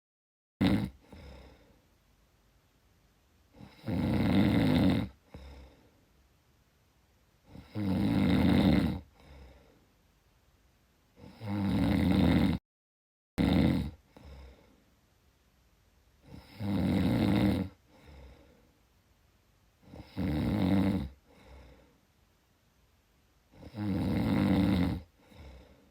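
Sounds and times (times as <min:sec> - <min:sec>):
person snoring: 0:00.6 - 0:01.8, 0:03.6 - 0:05.9, 0:07.5 - 0:09.8, 0:11.2 - 0:12.6, 0:13.4 - 0:14.8, 0:16.2 - 0:18.6, 0:19.8 - 0:21.9, 0:23.5 - 0:25.9
quiet breathing: 0:00.9 - 0:02.2, 0:04.7 - 0:06.3, 0:09.0 - 0:10.1, 0:13.9 - 0:15.1, 0:17.7 - 0:19.1, 0:21.0 - 0:22.4, 0:25.0 - 0:25.9.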